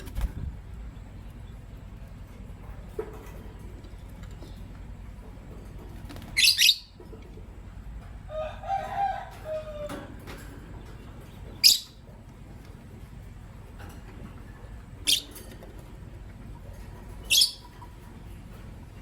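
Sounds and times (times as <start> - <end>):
lovebirds shrill calls: 6.3 - 7.0, 11.5 - 12.0, 15.0 - 15.4, 17.2 - 17.8
lovebirds soft chattering: 15.0 - 15.6, 17.1 - 18.4.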